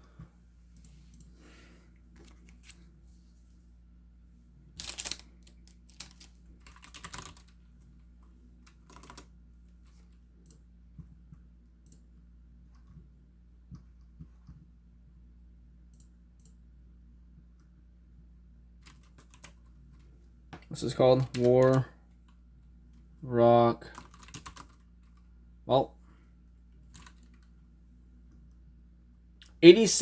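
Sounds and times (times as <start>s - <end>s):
keyboard typing: 4.8s - 7.6s, 8.6s - 10.6s, 18.8s - 20.1s, 21.2s - 22.4s, 23.9s - 25.3s, 26.8s - 27.5s.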